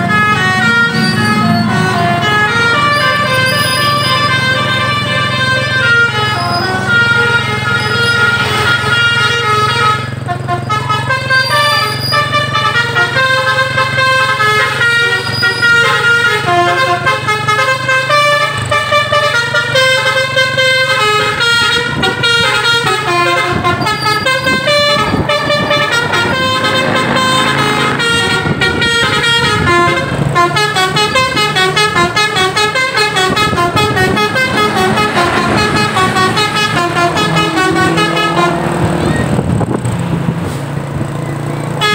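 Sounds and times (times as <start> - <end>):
musical bus air horn tune: 0.0 - 39.6
engine running low: 0.0 - 41.9.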